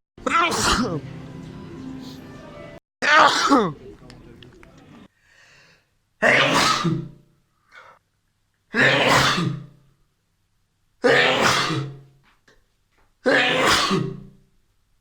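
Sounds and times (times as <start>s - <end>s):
man sneezing: 0.5s - 1.0s, 3.0s - 3.7s, 6.2s - 7.2s, 8.7s - 9.7s, 11.0s - 12.0s, 13.2s - 14.2s.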